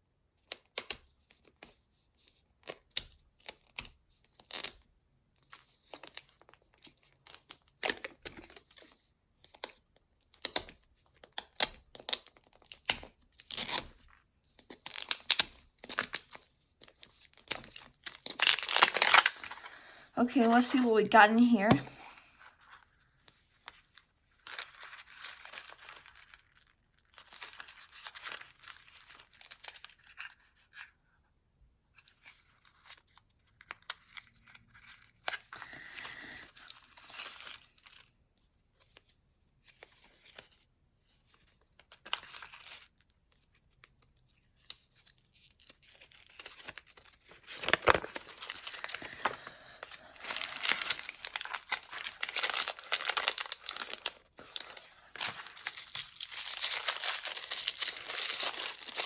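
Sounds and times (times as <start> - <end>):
packaging tearing and crinkling: 10.4 - 19.8, 24.4 - 30.3, 44.9 - 59.0.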